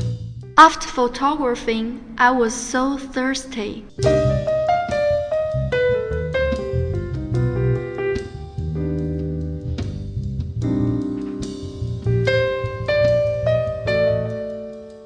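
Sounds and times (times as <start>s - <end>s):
piano music: 3.8s - 15.0s.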